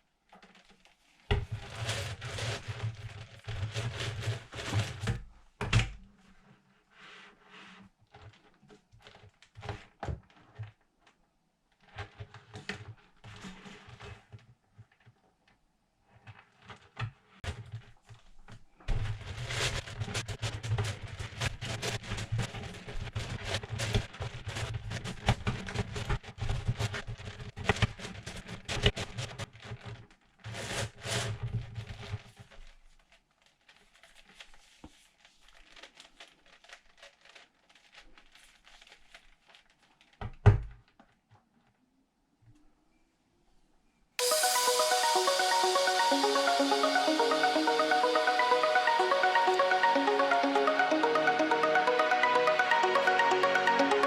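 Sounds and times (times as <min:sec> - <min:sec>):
wrapping crinkling and rustling: 0:33.1 - 0:40.2.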